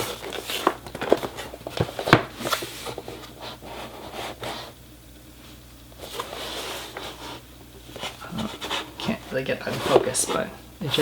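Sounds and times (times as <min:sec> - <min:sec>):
cardboard box rubbing and scraping: 0:06.0 - 0:10.5.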